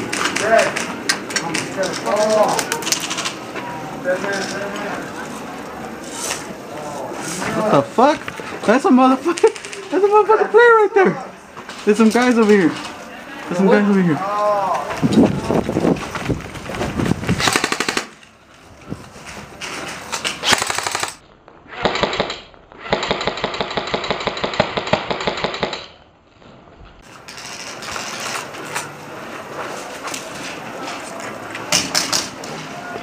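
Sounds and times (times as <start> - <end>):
airsoft guns firing bursts: 9.2 - 10.1, 17.4 - 18.2, 20.4 - 21.2, 21.8 - 25.9.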